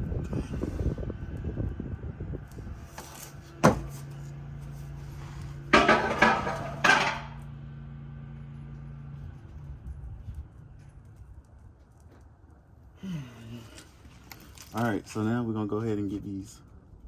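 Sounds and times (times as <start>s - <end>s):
low hum: 0.0s - 14.6s
metal tools clanking: 5.7s - 7.4s.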